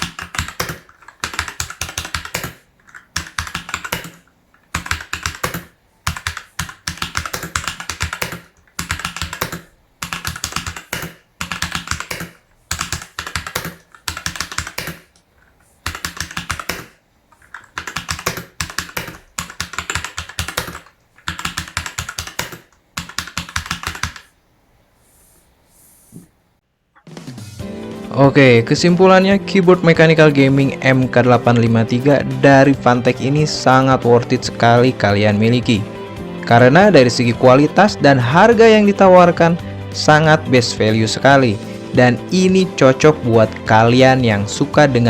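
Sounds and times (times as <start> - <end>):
mechanical keyboard typing: 0.0 - 15.1, 15.8 - 24.3.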